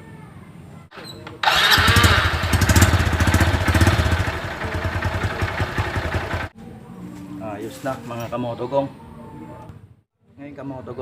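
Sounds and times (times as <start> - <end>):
motorcycle engine starting and idling: 0.9 - 6.5.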